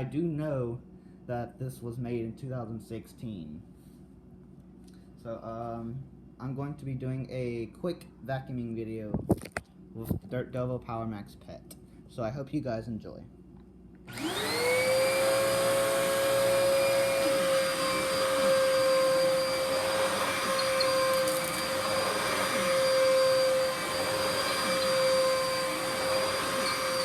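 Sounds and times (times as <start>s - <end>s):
vacuum cleaner motor whine: 14.1s - 27.0s.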